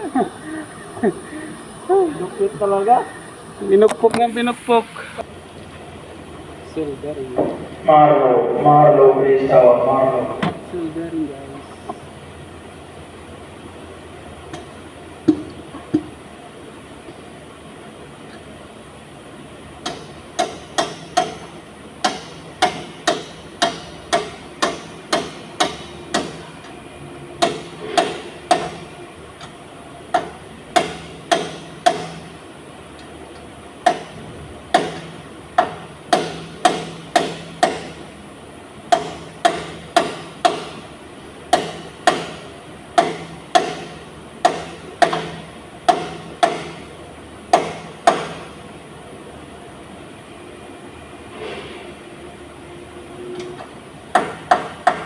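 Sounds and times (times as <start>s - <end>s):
hammer pounding on metal: 19.8s - 26.5s, 27.4s - 28.9s, 30.1s - 32.4s, 33.8s - 38.0s, 38.9s - 40.9s, 41.5s - 46.9s, 47.5s - 48.6s, 54.1s - 55.0s.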